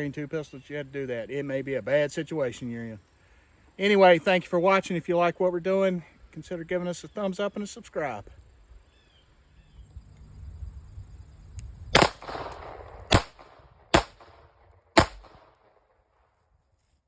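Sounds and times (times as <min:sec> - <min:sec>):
pistol shots: 0:11.9 - 0:15.7.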